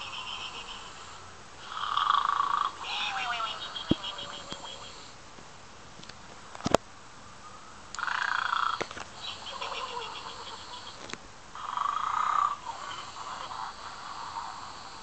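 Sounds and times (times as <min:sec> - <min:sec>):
toy pig snoring: 0:01.6 - 0:05.1, 0:11.6 - 0:15.0.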